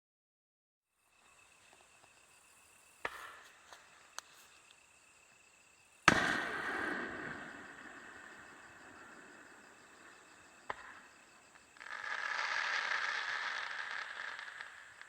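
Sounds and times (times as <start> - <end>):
insects trilling: 1.0 - 15.0
fireworks bangs and booms: 2.9 - 4.3, 5.9 - 15.0.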